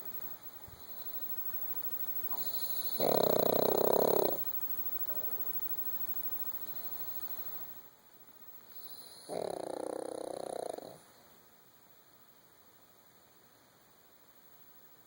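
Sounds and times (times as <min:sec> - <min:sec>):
puppy snoring: 0:02.2 - 0:05.7, 0:08.7 - 0:11.0.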